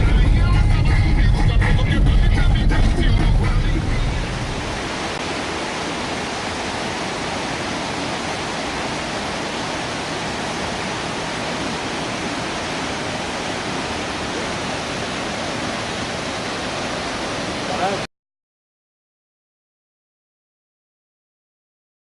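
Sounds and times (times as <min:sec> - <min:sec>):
waterfall rushing: 0:01.1 - 0:18.1.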